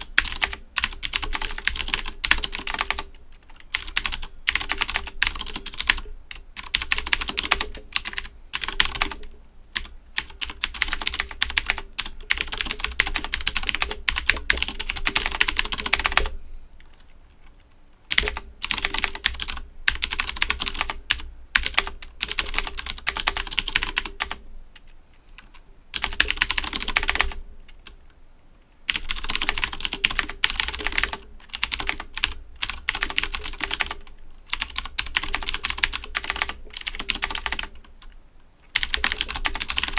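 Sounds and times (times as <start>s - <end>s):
clicky mechanical keyboard typing: 0.0s - 28.0s, 28.9s - 39.9s.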